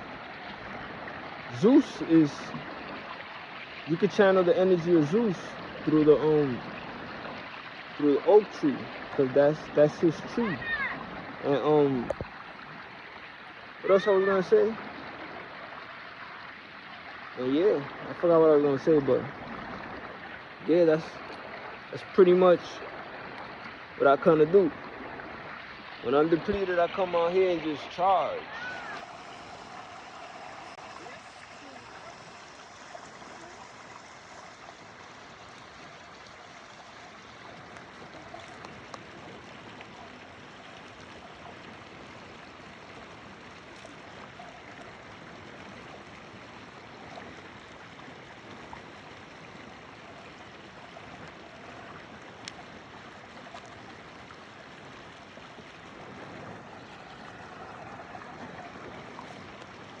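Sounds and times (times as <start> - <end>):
stream water flowing: 0.0 - 60.0
faint clicks: 52.4 - 52.6.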